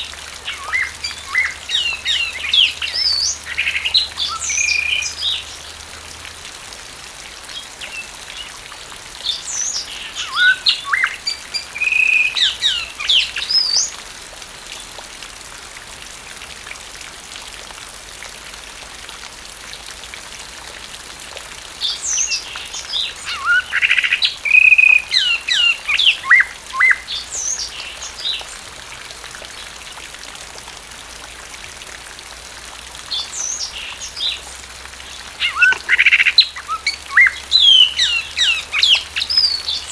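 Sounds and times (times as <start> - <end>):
steady rain hiss: 0.0 - 39.9
mockingbird singing: 35.2 - 39.9.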